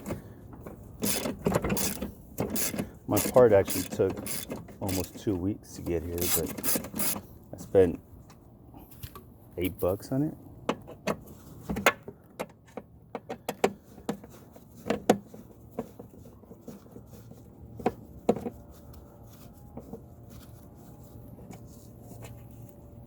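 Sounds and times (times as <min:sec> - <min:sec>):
metallic clicks of tools and bolts: 0:01.0 - 0:05.3.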